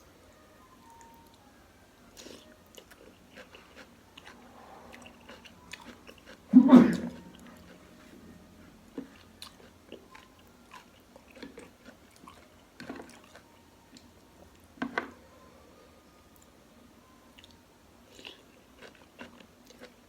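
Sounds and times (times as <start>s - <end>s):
person chewing food: 2.2s - 7.9s, 8.9s - 14.1s, 18.1s - 20.0s.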